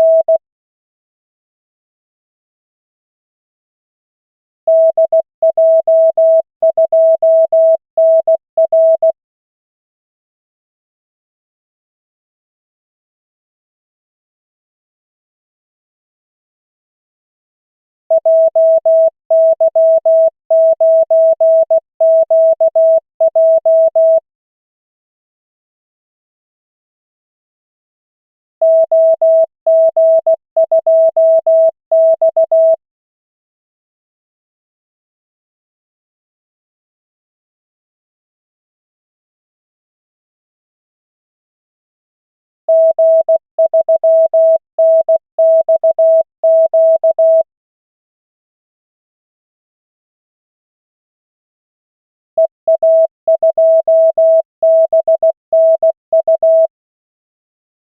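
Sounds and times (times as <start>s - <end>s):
morse code tone: 18.2s - 24.2s, 28.6s - 32.8s, 42.7s - 47.5s, 52.4s - 56.7s.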